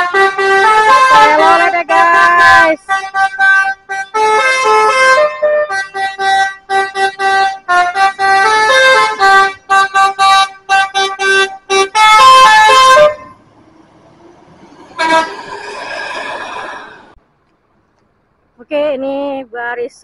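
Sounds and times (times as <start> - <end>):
musical air horn toots: 0.0 - 13.4, 14.9 - 17.0
faint second horn: 15.0 - 16.3.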